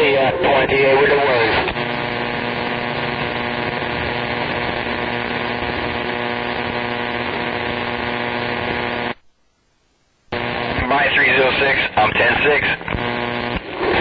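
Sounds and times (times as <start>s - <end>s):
radio static: 0.0s - 9.2s, 10.3s - 14.0s
buzzing hum of fixed tones: 0.0s - 14.0s.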